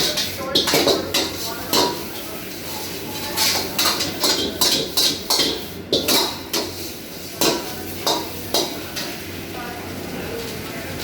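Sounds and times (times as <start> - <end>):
metal utensil clanking on a pan: 0.0 - 9.2.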